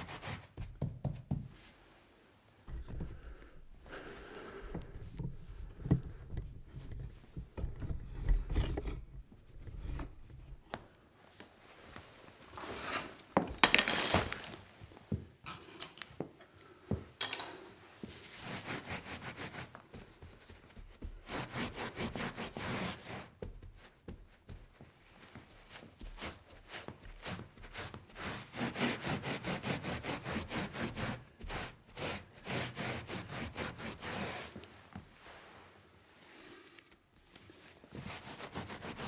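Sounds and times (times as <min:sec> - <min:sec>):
rubbing and wiping: 0:00.0 - 0:02.0, 0:02.7 - 0:10.7, 0:18.0 - 0:39.0
knocks and clinks of handling: 0:13.5 - 0:14.6, 0:17.2 - 0:17.8.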